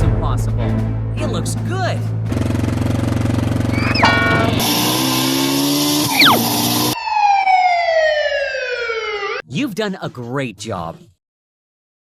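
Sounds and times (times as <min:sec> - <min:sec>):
cartoon motor engine sound: 0:02.3 - 0:07.0
cartoon whistle glides: 0:03.7 - 0:04.2, 0:06.0 - 0:07.6
long falling whistle: 0:06.0 - 0:09.4.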